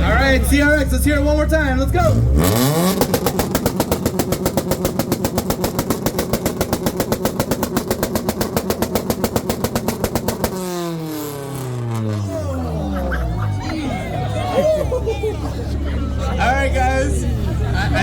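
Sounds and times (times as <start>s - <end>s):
engine launch limiter popping: 0.0s - 14.2s.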